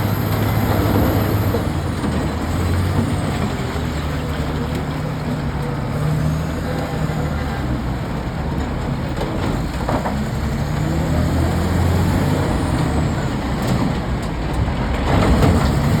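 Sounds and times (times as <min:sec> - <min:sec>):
diesel engine running: 0:00.0 - 0:16.0.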